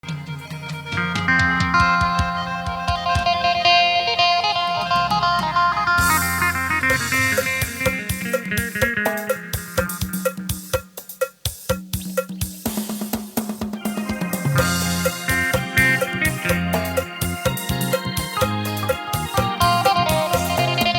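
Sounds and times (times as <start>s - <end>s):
drum kit beat: 0.0s - 20.9s
plucked lute melody: 0.9s - 9.8s, 14.4s - 20.9s.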